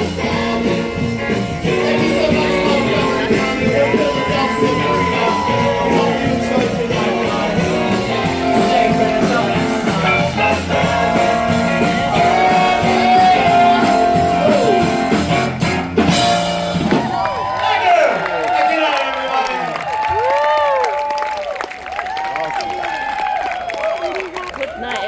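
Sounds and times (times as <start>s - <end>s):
rock song with singing: 0.0s - 17.2s.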